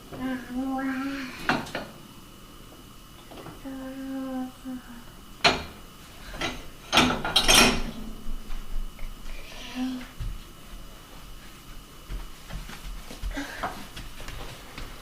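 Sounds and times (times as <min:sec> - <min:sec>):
person humming: 0:00.2 - 0:01.6, 0:03.6 - 0:05.2, 0:09.3 - 0:10.2
dishes and cutlery clattering: 0:06.4 - 0:08.0.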